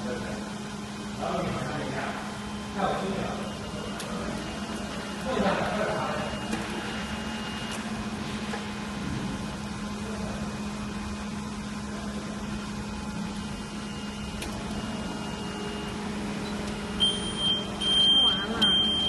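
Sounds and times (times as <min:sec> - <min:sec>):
hot-air heater and fan hum: 0:00.0 - 0:19.0
high electronic beeps: 0:13.9 - 0:19.0.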